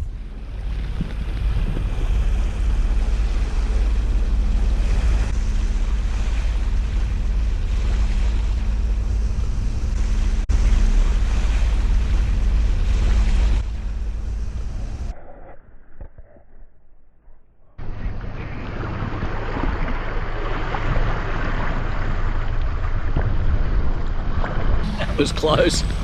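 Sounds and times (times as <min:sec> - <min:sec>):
water rushing along boat hull: 0:00.0 - 0:15.1, 0:17.8 - 0:26.0
wind buffeting microphone: 0:00.0 - 0:15.1.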